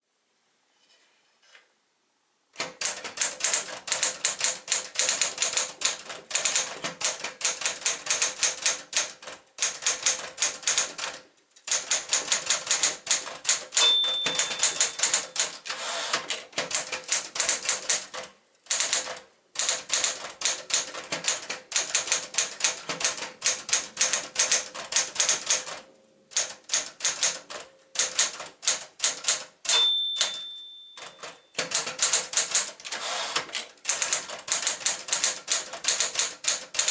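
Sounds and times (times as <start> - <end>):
typewriter key strikes: 2.6 - 25.7, 26.4 - 36.9
typewriter bell ring: 13.5 - 16.0, 29.7 - 32.6.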